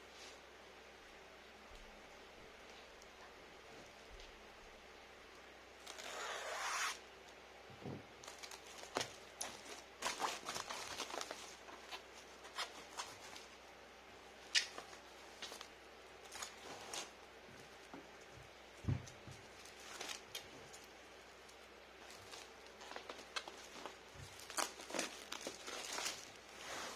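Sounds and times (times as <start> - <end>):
packing tape ripping: 5.8 - 7.0, 22.2 - 26.9
packaging being handled: 8.2 - 13.6, 19.0 - 26.9.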